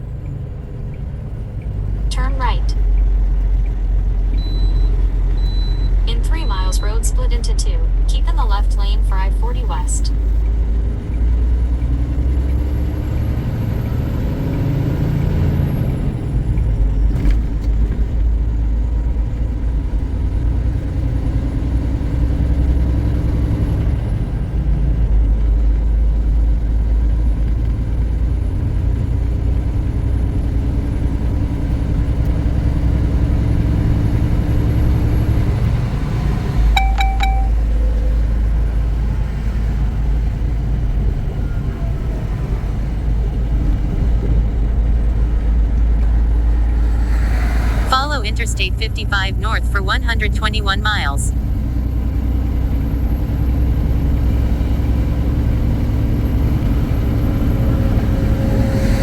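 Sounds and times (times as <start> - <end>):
diesel engine rumble: 0.0 - 59.0
road noise: 0.0 - 59.0
short electronic beep: 36.8 - 37.7.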